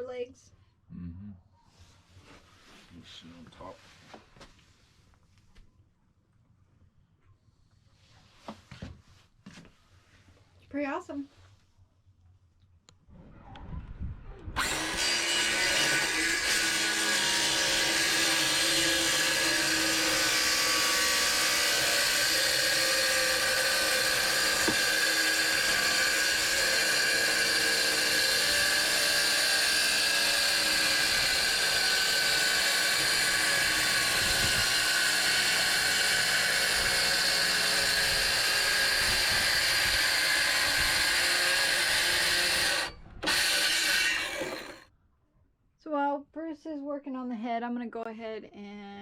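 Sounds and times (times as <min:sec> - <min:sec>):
power tool whining on wood: 0:14.6 - 0:44.9.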